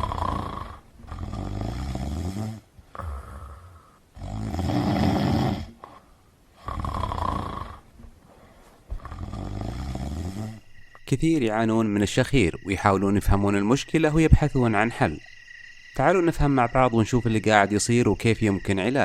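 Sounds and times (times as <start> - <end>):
person snoring: 0.0 - 6.0, 6.6 - 7.8, 8.9 - 10.8.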